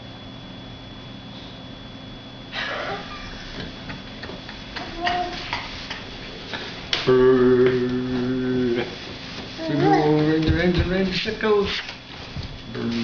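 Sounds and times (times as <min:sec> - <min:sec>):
child humming: 0:04.8 - 0:05.4, 0:07.0 - 0:09.0, 0:09.6 - 0:10.4.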